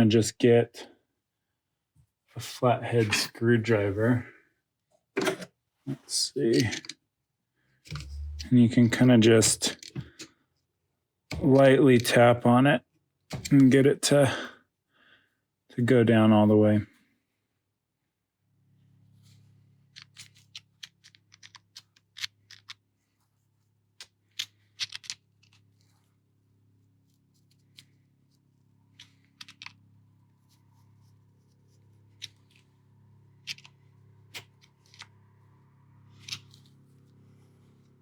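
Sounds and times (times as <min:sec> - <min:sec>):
steady low hum: 0:07.9 - 0:10.0.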